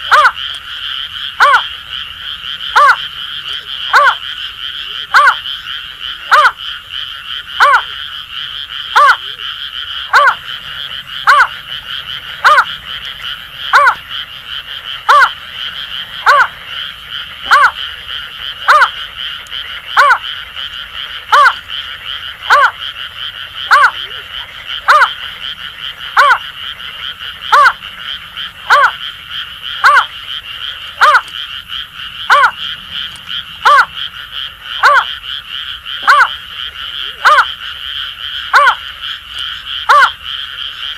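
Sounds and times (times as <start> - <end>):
frog chorus: 0.0 - 40.9
bird hooting call: 1.4 - 1.7, 2.8 - 3.0, 10.1 - 10.4, 11.2 - 11.6, 13.7 - 14.0, 15.1 - 15.4, 26.2 - 26.4, 31.0 - 31.3, 32.3 - 34.0, 39.9 - 40.2.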